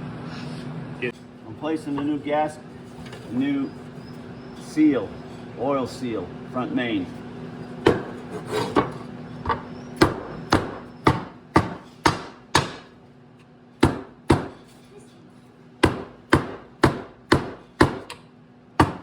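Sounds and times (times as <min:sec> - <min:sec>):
hammer knocking on metal seal: 0:15.8 - 0:18.1.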